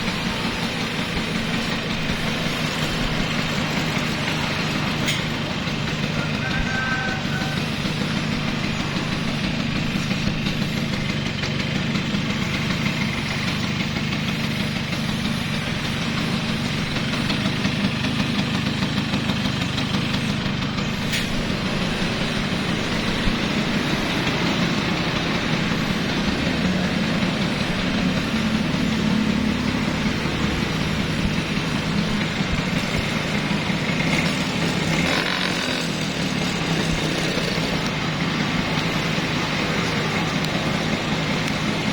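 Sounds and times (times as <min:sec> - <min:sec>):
scooter engine running: 0:00.0 - 0:41.9.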